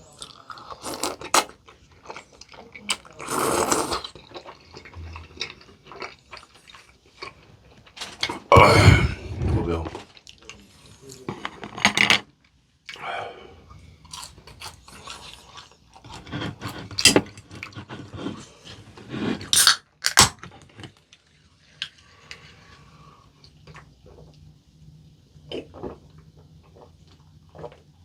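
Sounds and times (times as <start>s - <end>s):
person chewing with crunches: 0.0s - 10.6s, 14.0s - 20.8s.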